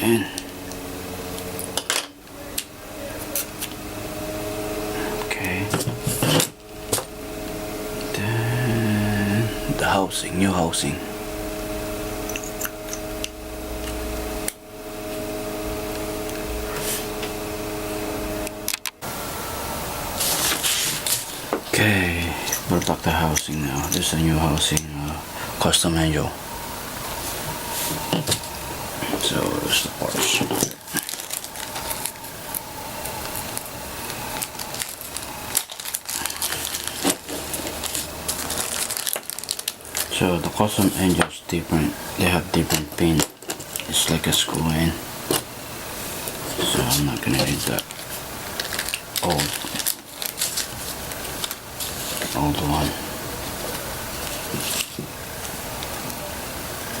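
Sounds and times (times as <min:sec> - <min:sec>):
electrical hum: 0:00.0 - 0:57.0
rustling: 0:20.1 - 0:21.7, 0:27.0 - 0:41.2, 0:45.1 - 0:56.2.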